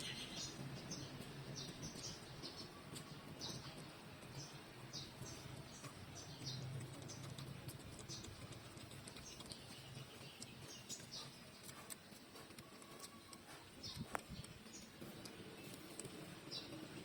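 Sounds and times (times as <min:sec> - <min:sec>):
puppies suckling wet clicks: 0:00.4 - 0:17.0.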